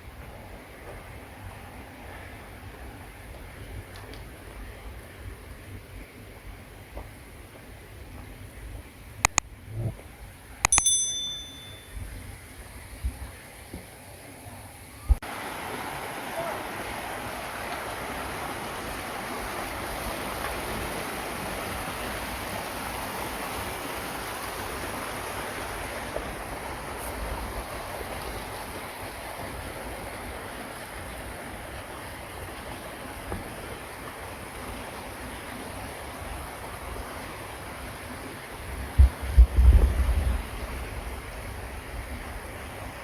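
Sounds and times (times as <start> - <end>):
waterfall rushing: 15.3 - 26.1
wind buffeting microphone: 38.8 - 42.6.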